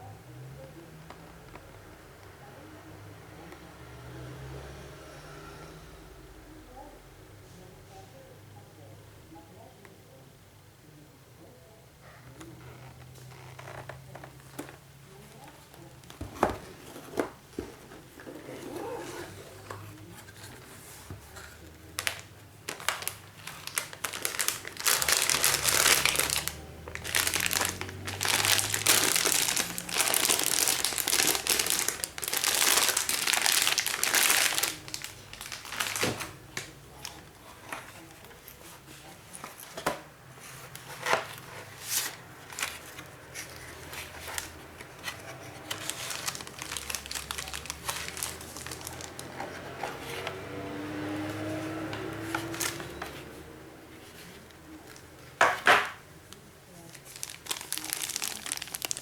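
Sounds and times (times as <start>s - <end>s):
packaging crinkling and rustling: 12.6s - 50.6s, 51.3s - 53.4s, 54.0s - 59.0s.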